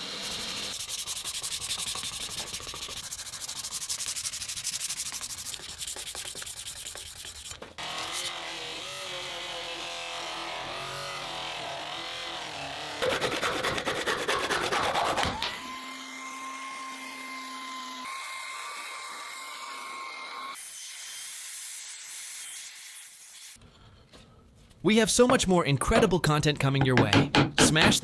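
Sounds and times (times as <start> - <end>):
rapid rasping on metal: 0.7 - 7.6, 13.0 - 15.2.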